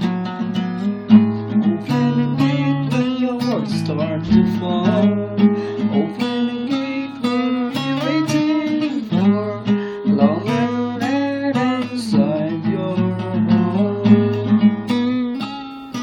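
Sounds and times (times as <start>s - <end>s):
acoustic guitar strummed and picked: 0.0s - 16.0s.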